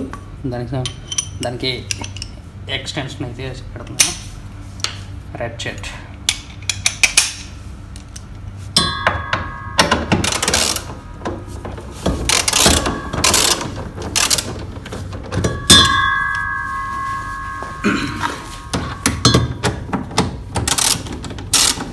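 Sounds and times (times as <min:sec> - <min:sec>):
sharp metallic clank: 0:08.8 - 0:20.0
metal clinking and ringing: 0:08.8 - 0:20.1
ratchet wrench clicking: 0:12.3 - 0:14.5, 0:20.6 - 0:21.9.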